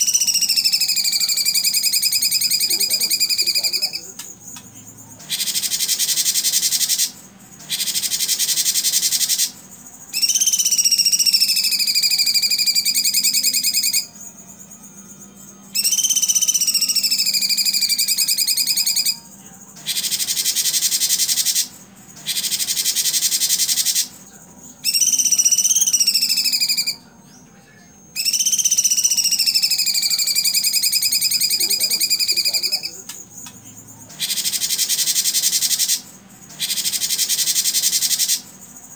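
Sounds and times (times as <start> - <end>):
bird singing harsh rapid bursts: 0.0 - 38.9
bird whistled note: 10.2 - 14.1, 15.7 - 19.2, 24.8 - 27.1, 28.1 - 32.8.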